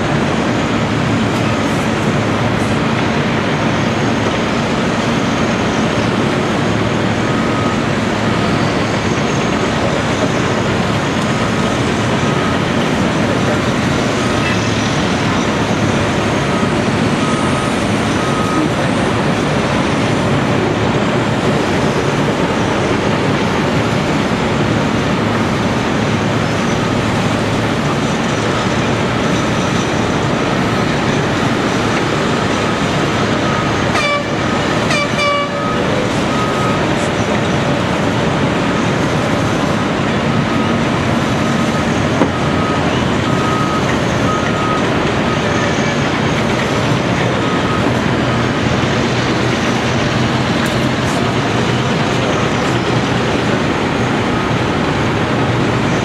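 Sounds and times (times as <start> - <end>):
excavator diesel engine running: 0.0 - 56.0
short horn toots: 33.9 - 35.6.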